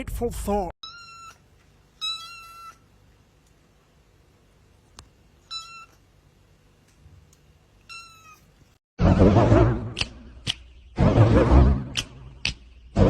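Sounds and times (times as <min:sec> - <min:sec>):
cat meowing: 0:00.8 - 0:01.4, 0:02.0 - 0:02.8, 0:05.4 - 0:06.0, 0:07.8 - 0:08.5
sharp cracks: 0:09.5 - 0:13.0.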